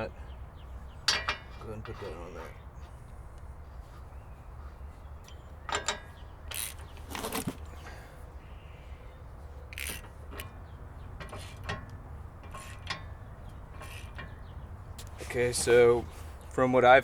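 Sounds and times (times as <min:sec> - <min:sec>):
metal nut clinking and scraping: 0:09.7 - 0:10.6, 0:11.2 - 0:14.4.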